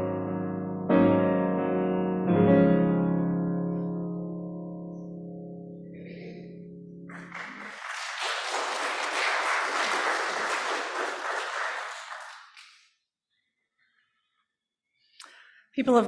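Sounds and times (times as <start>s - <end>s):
piano chord: 0.0s - 7.5s
congregation applauding: 7.1s - 13.0s.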